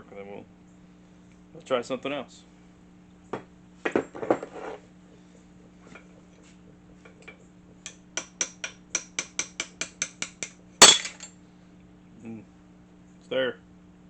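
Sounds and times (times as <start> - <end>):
hammer striking metal: 7.9 - 11.3
metal parts clattering: 10.8 - 11.3.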